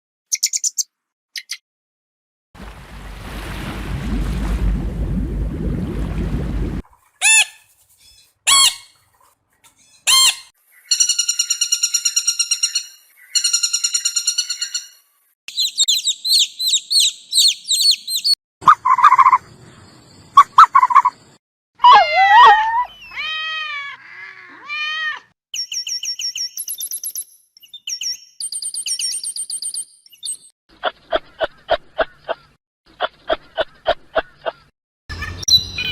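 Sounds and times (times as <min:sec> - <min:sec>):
bird chirping trills: 0:00.3 - 0:01.6, 0:09.6 - 0:21.4, 0:25.6 - 0:35.9
high repeated bird whistles: 0:15.5 - 0:19.4, 0:25.6 - 0:30.4, 0:35.1 - 0:35.9
gliding squeaky bird notes: 0:35.1 - 0:35.9.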